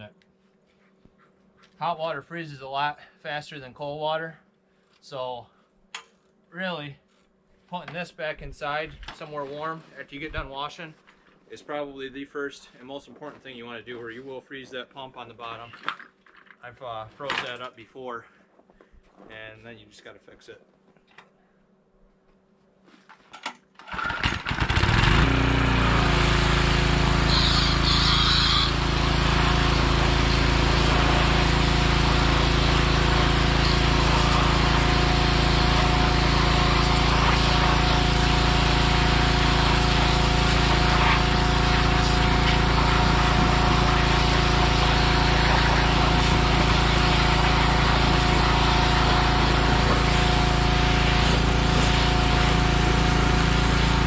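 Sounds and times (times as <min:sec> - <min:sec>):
small engine running: 0:23.9 - 0:54.0.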